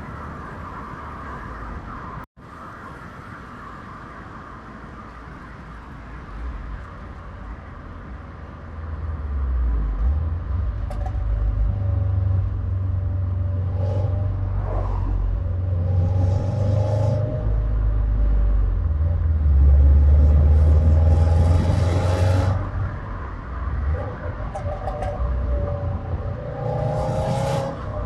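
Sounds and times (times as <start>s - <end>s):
car engine rumbling deeply: 6.5s - 28.0s.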